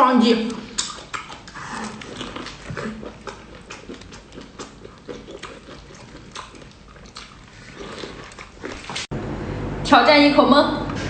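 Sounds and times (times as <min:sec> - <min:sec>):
person chewing with wet smacks: 0:00.3 - 0:09.1.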